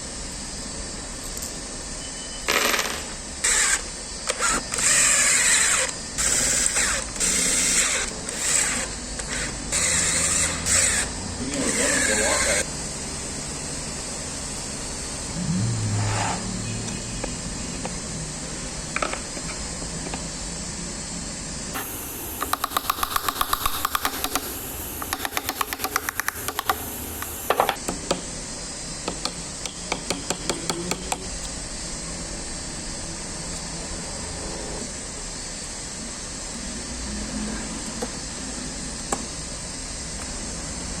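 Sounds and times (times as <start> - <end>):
steady hiss: 20.3 - 30.4
rapid mechanical clicking: 21.8 - 27.8.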